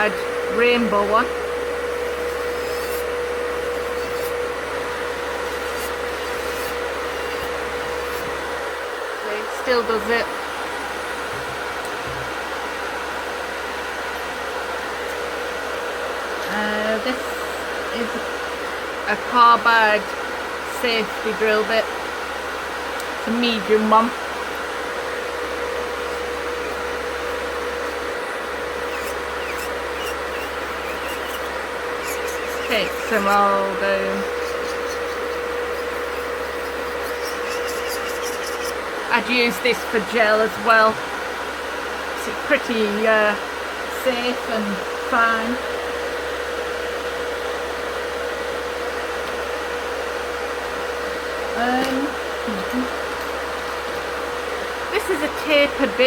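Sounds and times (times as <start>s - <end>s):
electric nail drill whirring: 0.0s - 8.9s, 22.9s - 41.4s
dust collector fan whirring: 0.0s - 56.0s.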